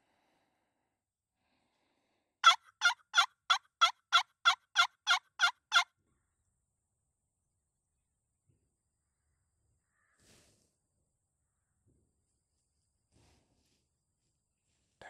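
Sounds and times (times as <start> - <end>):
turkey yelps: 2.4 - 5.9.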